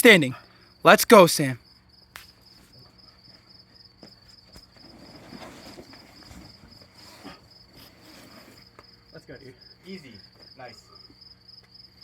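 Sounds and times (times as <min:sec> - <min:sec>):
insect chirping trill: 0:00.0 - 0:12.0
faint scuffs and rustles: 0:02.4 - 0:09.0.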